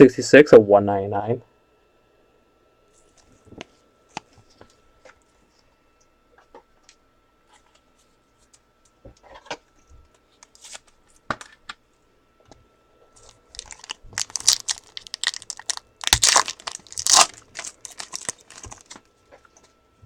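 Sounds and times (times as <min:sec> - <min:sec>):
foil wrapper tearing and crinkling: 0:13.2 - 0:19.0.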